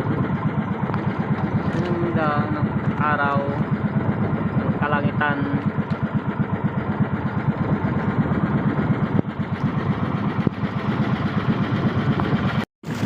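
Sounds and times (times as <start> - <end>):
boat engine chugging: 0.0 - 13.0.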